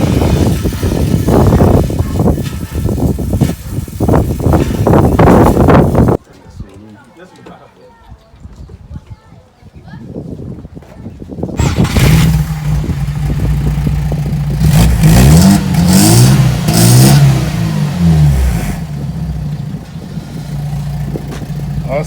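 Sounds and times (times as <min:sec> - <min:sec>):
car engine starting and revving: 0:11.6 - 0:22.0.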